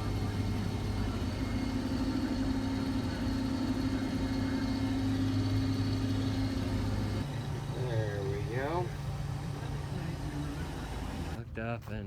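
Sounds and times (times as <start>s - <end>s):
diesel engine running steadily: 0.0s - 11.4s.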